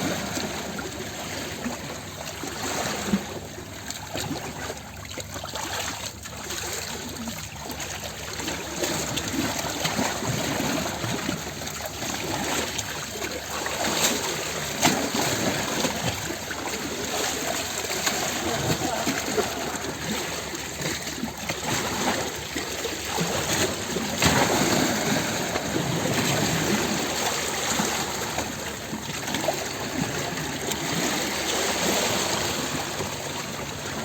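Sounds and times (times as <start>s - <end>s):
ocean waves washing in: 13.5s - 34.0s.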